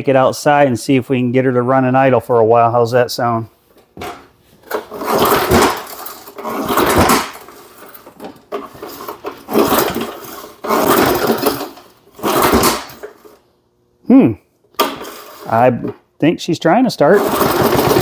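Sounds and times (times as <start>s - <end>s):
lawn mower engine cranking: 4.0s - 13.4s, 14.8s - 15.8s, 17.2s - 18.0s.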